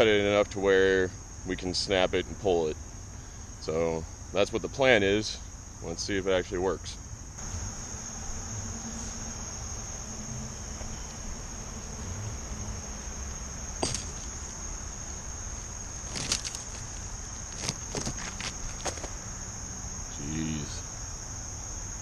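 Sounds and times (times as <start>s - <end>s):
insects droning: 0.0s - 22.0s
sharp knocks: 13.8s - 14.4s.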